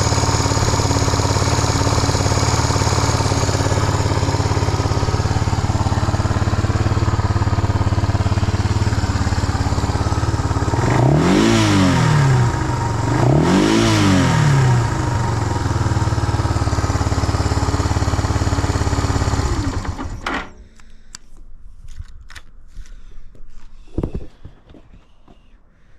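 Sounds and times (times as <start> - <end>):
motorcycle engine idling and revving: 0.0 - 20.4.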